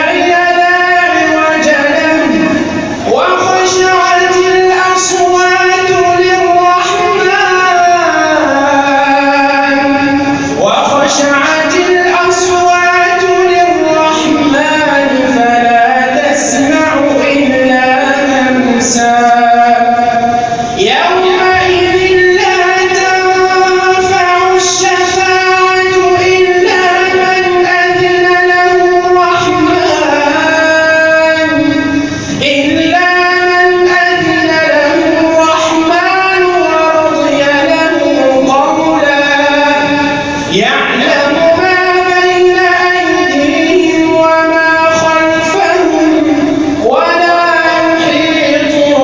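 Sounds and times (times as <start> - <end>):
melodic recitation by one voice: 0.0 - 49.0.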